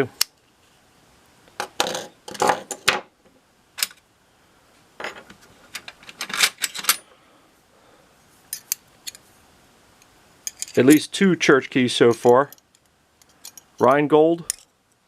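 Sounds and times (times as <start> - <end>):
metal tools clinking: 5.0 - 7.0, 10.4 - 11.1, 12.0 - 14.7.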